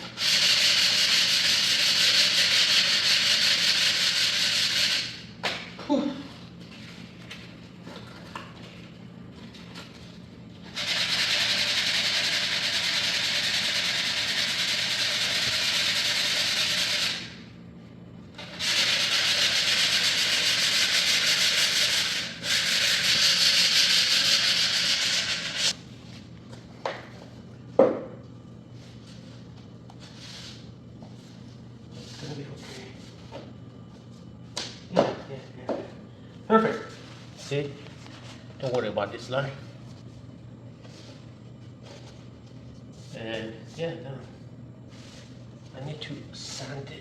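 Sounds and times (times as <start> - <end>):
sandpaper sanding floor plank: 0.2 - 5.2, 10.8 - 17.3, 18.4 - 25.7.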